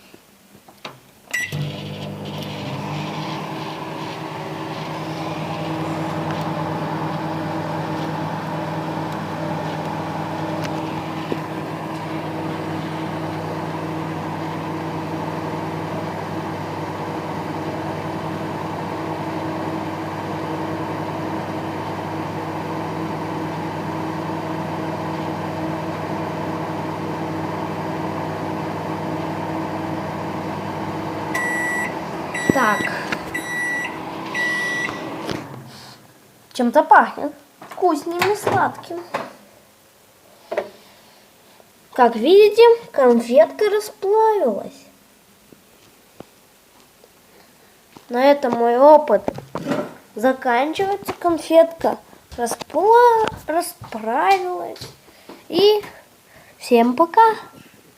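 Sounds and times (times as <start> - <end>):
microwave short beep: 1.3 - 2.8, 31.3 - 35.2
microwave oven humming: 1.3 - 36.0.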